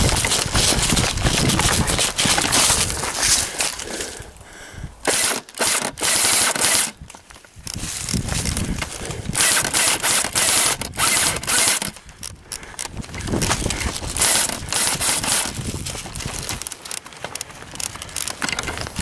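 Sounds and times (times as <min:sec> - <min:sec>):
automatic airsoft gunfire: 0:05.0 - 0:06.9, 0:09.4 - 0:11.9.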